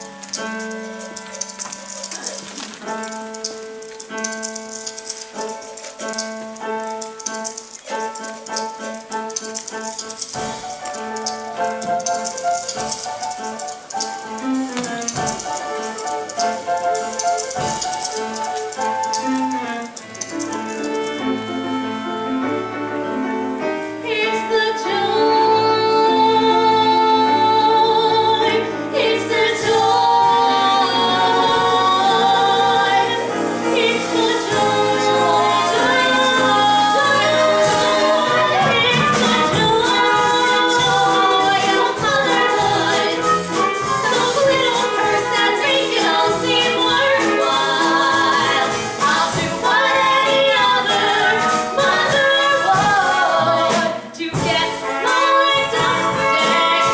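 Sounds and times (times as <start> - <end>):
instrumental accompaniment: 0.0 - 56.9
group of voices singing: 24.0 - 56.9.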